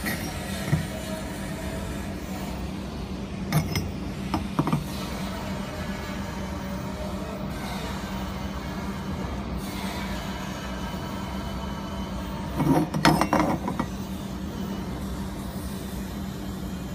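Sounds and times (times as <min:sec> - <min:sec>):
metallic clinks and knocks: 0:03.5 - 0:03.9.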